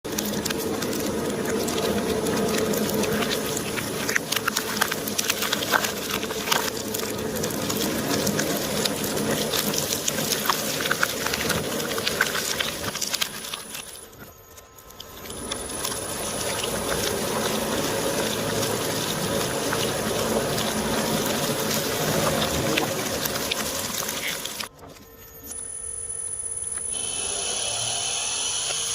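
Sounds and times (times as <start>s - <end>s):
blades crunching plastic eggs: 0.1s - 24.7s
shredder motor humming: 26.2s - 28.9s.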